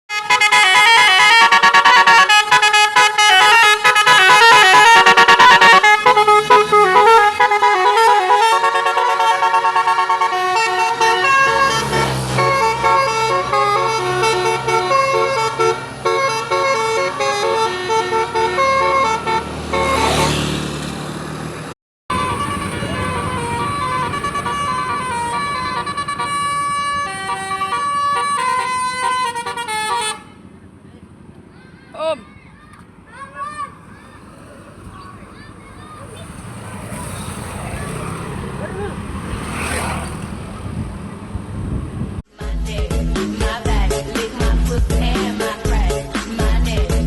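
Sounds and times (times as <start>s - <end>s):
musical bus horn melody: 0.1s - 20.6s, 22.1s - 30.5s
low engine rumble: 21.0s - 42.2s.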